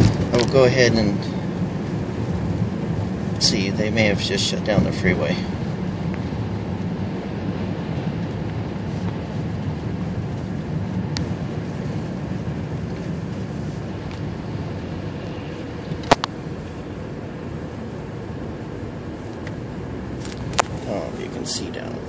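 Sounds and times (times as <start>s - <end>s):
car road and engine rumble: 0.0s - 22.0s.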